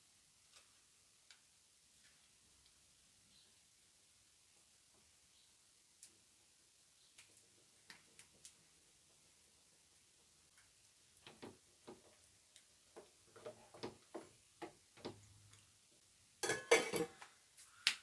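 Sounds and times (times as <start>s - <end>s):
kitchen clatter: 13.0s - 15.3s, 16.4s - 17.2s
utensils clicking and knocking: 13.0s - 15.3s.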